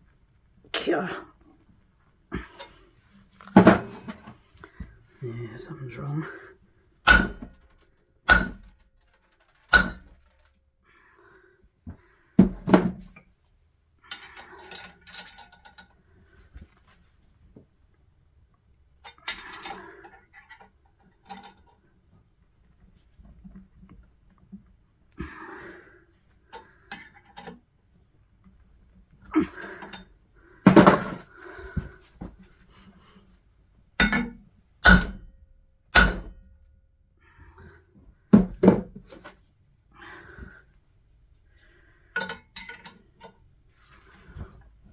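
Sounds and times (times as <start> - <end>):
metal tools clanking: 3.4 - 4.4
loud metallic knocks: 7.1 - 7.6, 8.3 - 8.7, 9.7 - 10.1.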